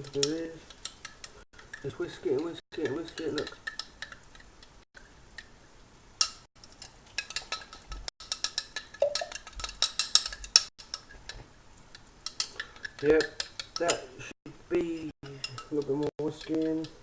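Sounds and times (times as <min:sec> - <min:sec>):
eggs whisked in a cup: 0:00.1 - 0:05.6, 0:06.3 - 0:13.9.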